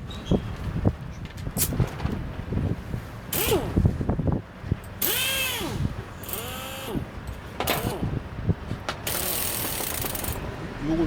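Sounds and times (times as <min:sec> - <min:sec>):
small motor whining: 0:03.4 - 0:03.8, 0:05.0 - 0:07.1, 0:09.1 - 0:10.4.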